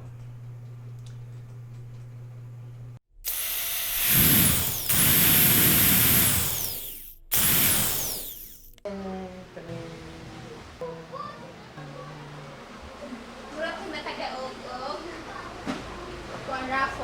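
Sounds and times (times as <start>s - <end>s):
small electric motor whining: 3.3s - 8.8s.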